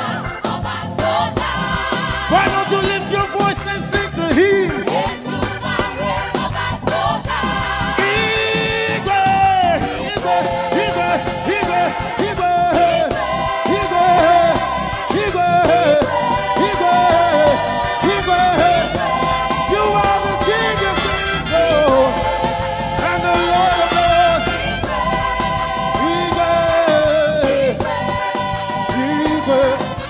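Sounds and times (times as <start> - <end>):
gospel band playing: 0.0 - 30.0
voices singing along: 0.0 - 30.0.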